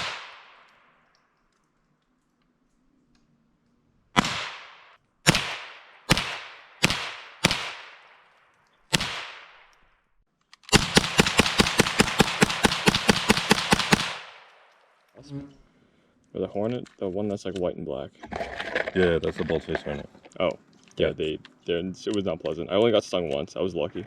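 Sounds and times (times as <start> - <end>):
gunshots with echo: 0.0 - 1.0, 4.2 - 9.8, 10.7 - 14.7.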